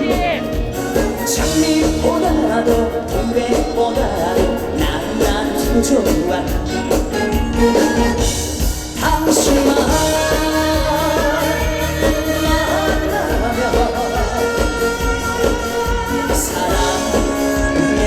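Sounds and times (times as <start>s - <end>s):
backing music with steady beat: 0.0s - 18.0s
man singing: 0.0s - 18.0s.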